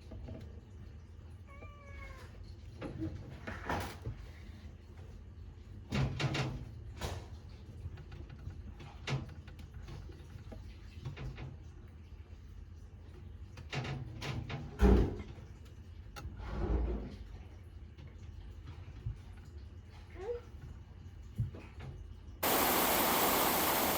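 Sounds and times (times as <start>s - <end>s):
cat meowing: 1.5s - 2.3s.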